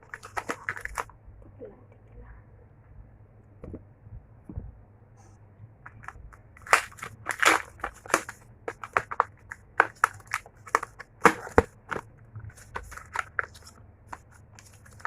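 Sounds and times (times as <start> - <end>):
food packaging crinkling: 0.0 - 1.1, 5.9 - 15.0.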